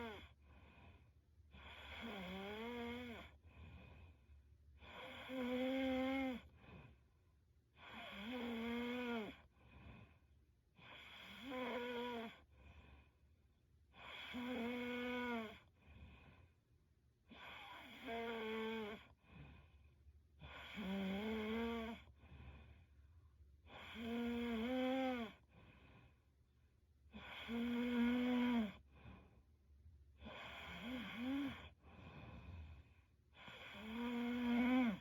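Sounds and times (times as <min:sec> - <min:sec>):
woman snoring: 0:00.0 - 0:00.3, 0:01.6 - 0:03.4, 0:04.8 - 0:06.5, 0:07.8 - 0:09.5, 0:10.8 - 0:12.5, 0:14.0 - 0:15.7, 0:17.3 - 0:19.2, 0:20.4 - 0:22.2, 0:23.7 - 0:25.5, 0:27.2 - 0:28.9, 0:30.2 - 0:32.8, 0:33.4 - 0:35.0
faint breaths: 0:00.0 - 0:05.4, 0:06.1 - 0:08.3, 0:09.3 - 0:11.5, 0:12.3 - 0:14.4, 0:15.5 - 0:17.9, 0:18.9 - 0:20.8, 0:21.9 - 0:24.0, 0:25.3 - 0:27.6, 0:28.7 - 0:29.6, 0:30.2 - 0:34.0.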